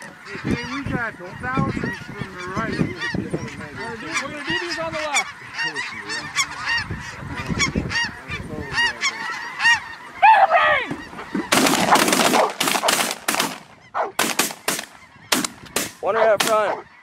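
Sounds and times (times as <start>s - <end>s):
geese honking: 0.0s - 17.0s
sharp cracks: 11.5s - 16.8s.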